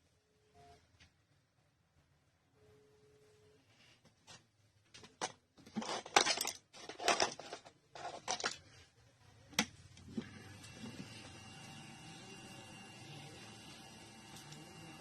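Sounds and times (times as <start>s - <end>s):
small parts rustling and crinkling: 4.1s - 9.0s.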